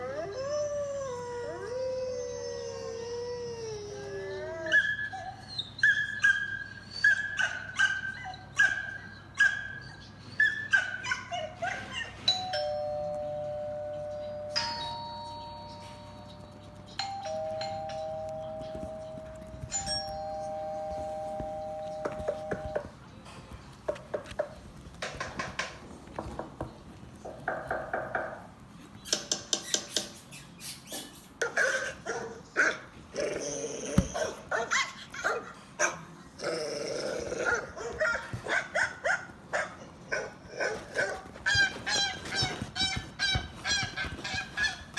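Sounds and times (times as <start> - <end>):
dog howling: 0.0 - 5.4
dog yelps: 0.0 - 12.2, 31.4 - 36.0, 37.3 - 44.9
doorbell ding-dong chimes: 12.3 - 22.7
dog barking: 37.4 - 44.9.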